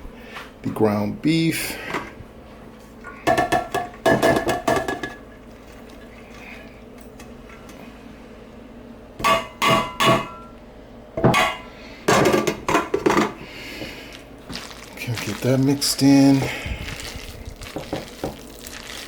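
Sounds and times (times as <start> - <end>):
utensil clanking against cooking dish: 3.1 - 5.3, 9.2 - 10.5, 11.2 - 14.0.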